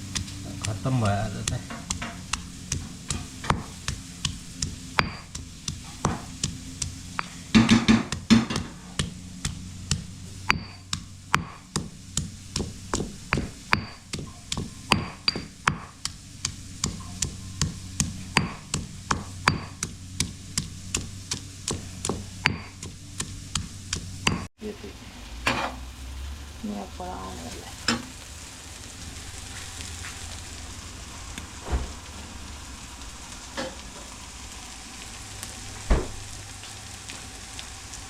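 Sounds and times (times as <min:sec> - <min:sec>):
lawn mower hum: 0:00.0 - 0:24.5.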